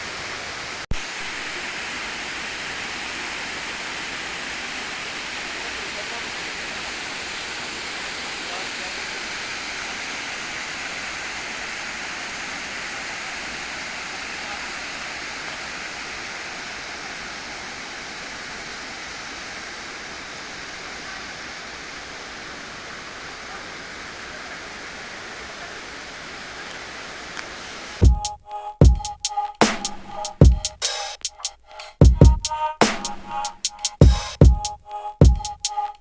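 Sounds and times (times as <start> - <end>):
waterfall roaring: 0.0 - 28.0
electronic music with heavy drums: 28.0 - 36.0.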